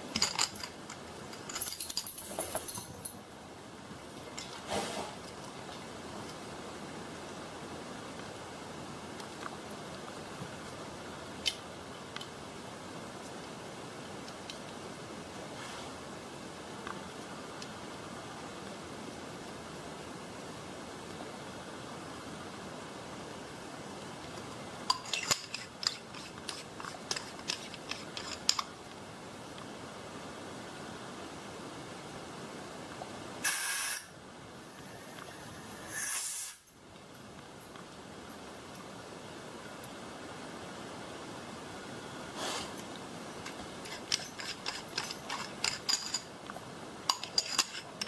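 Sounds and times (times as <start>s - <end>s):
steady hiss: 0.0s - 48.0s
sharp clicks and metallic clinks: 0.1s - 3.2s, 24.9s - 28.7s, 43.4s - 46.3s, 47.1s - 48.0s.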